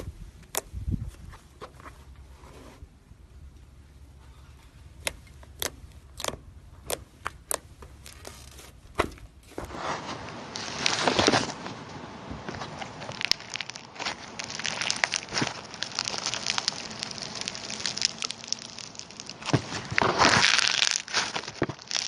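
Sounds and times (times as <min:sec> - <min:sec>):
slime crackling and crinkling: 0:09.9 - 0:22.0
slime popping: 0:13.2 - 0:22.0.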